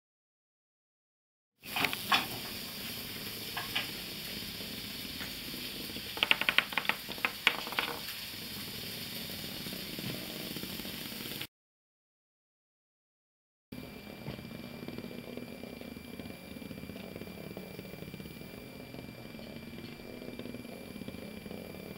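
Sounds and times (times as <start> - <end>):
cat toy rattling and clicking: 6.0 - 8.3.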